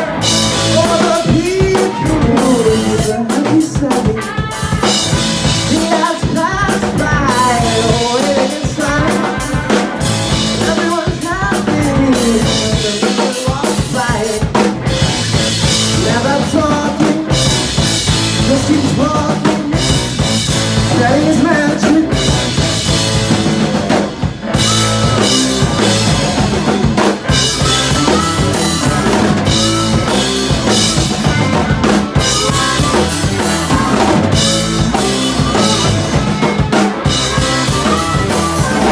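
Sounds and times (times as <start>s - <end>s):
live rock band playing: 0.0s - 38.9s
loud busy drum kit: 0.0s - 38.9s
lead instrument bending notes: 24.5s - 38.9s.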